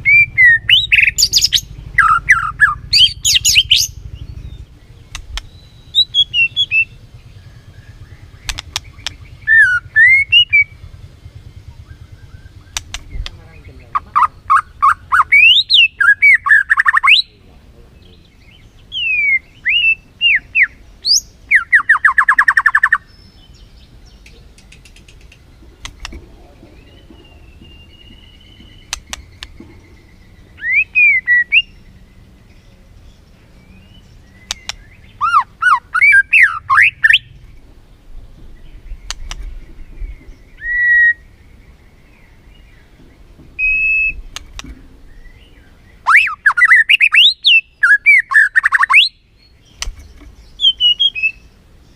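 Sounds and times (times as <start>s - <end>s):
bird singing whistled notes: 0.0s - 17.4s, 18.0s - 37.5s, 38.5s - 51.9s
steady low hum: 0.0s - 51.9s.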